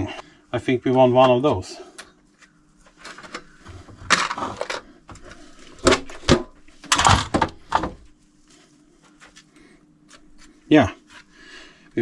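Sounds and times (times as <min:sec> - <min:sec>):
small hard parts clattering: 0:02.9 - 0:08.0.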